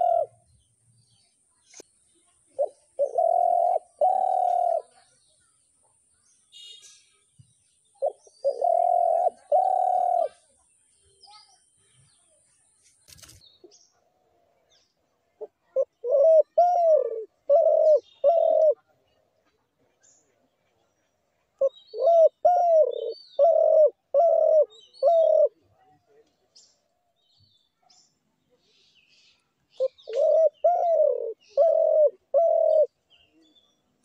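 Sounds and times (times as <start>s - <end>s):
dove cooing: 0.0s - 0.4s, 2.5s - 5.0s, 8.0s - 10.5s, 15.4s - 18.8s, 21.6s - 25.6s, 29.8s - 33.0s
small birds chirping: 0.0s - 34.0s.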